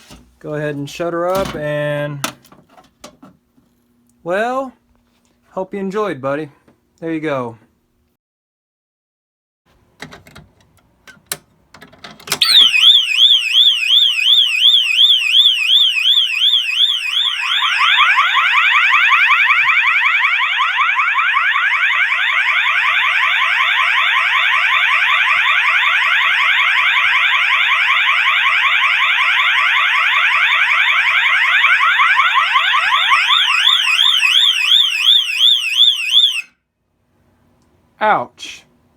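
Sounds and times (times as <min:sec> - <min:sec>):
lower sweeping alarm tone: 0:12.4 - 0:36.5
fire alarm warble tone: 0:12.4 - 0:36.6.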